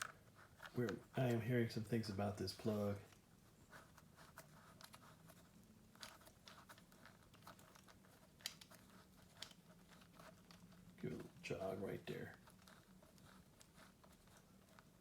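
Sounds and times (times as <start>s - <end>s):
faint low hum: 0.0s - 15.0s
small metal parts clicking: 5.9s - 10.8s.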